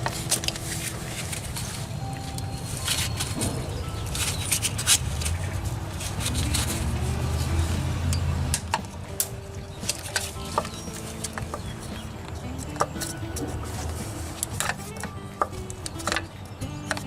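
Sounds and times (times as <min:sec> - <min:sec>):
low rumble: 0:03.3 - 0:08.6.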